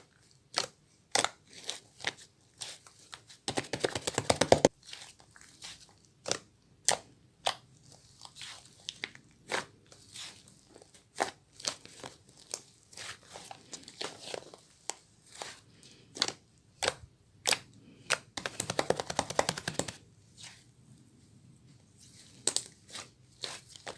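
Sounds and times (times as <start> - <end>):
rapid run of clicks: 3.5 - 4.7, 18.4 - 20.0.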